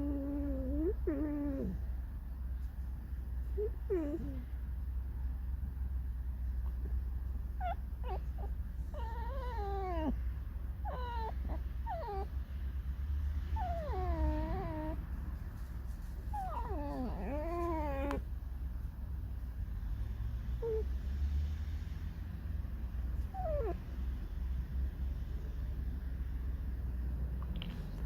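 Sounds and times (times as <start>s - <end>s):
fox whining and squeaking: 0.0s - 1.8s, 3.5s - 4.4s, 7.5s - 10.2s, 10.8s - 12.4s, 13.6s - 15.0s, 16.2s - 18.2s.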